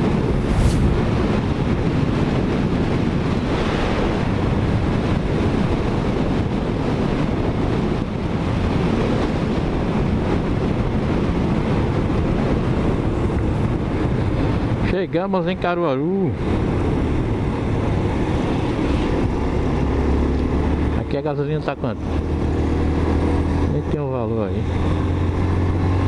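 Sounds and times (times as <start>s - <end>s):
road noise: 0.0s - 26.0s
wind buffeting microphone: 0.0s - 26.0s.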